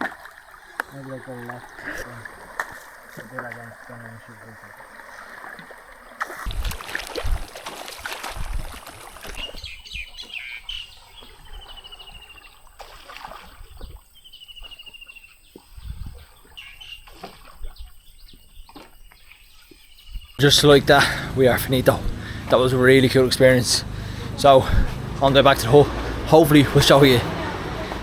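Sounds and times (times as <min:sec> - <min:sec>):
water splashing and rushing: 0:00.0 - 0:14.1, 0:20.4 - 0:28.0.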